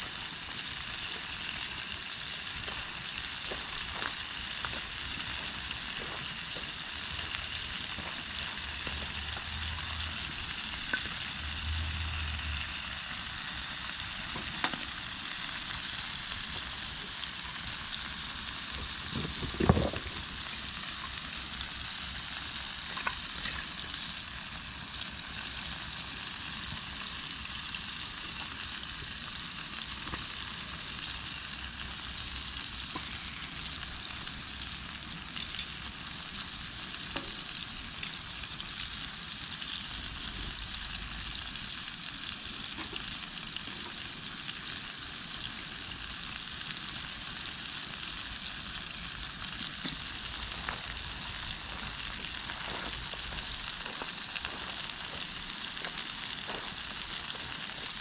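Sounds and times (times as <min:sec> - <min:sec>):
meat sizzling over a fire: 0:00.0 - 0:58.0
small pops and crackles: 0:18.8 - 0:21.2.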